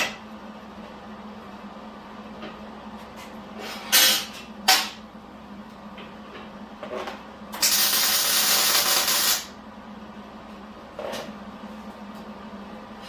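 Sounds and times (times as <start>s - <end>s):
welding arc hissing: 7.6s - 9.6s.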